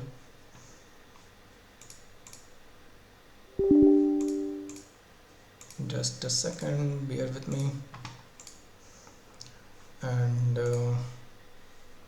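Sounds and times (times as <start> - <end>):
faint mouse clicks: 1.1 - 2.5, 5.6 - 5.8, 7.4 - 8.6, 10.6 - 11.0
computer alert chime: 3.6 - 4.8.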